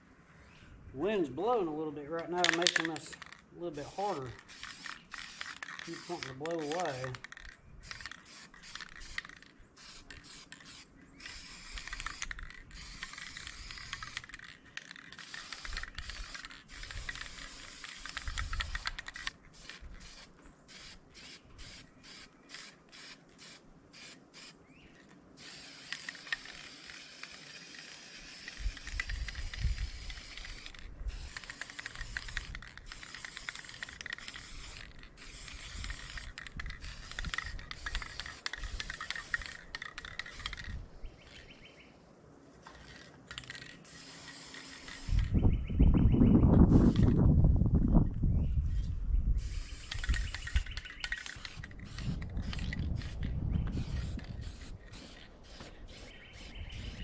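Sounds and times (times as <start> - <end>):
paint spraying in hissing bursts: 3.7 - 14.5, 15.1 - 24.6, 25.4 - 40.7, 42.8 - 45.2, 46.7 - 47.1, 49.4 - 57.0
wind rumbling on microphone: 15.6 - 20.3, 28.5 - 33.0, 34.2 - 41.3, 45.0 - 57.0.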